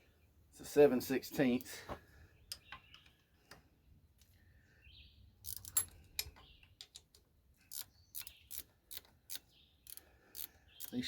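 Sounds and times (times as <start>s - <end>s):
bird chirping faintly: 7.6s - 11.0s
ratchet wrench clicking: 7.7s - 11.0s.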